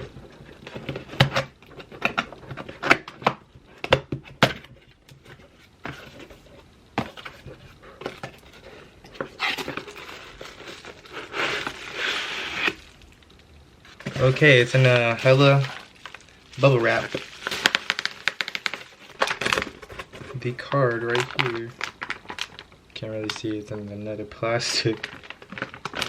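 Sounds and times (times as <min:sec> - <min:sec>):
bubble wrap rustling: 0:04.9 - 0:23.7, 0:24.6 - 0:26.0.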